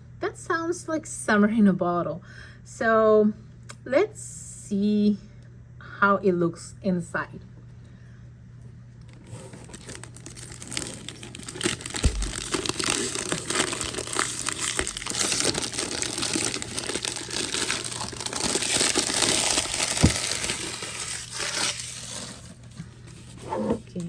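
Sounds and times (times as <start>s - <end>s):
packaging crinkling and tearing: 9.1s - 23.3s
low thumps of package handling: 9.2s - 21.4s.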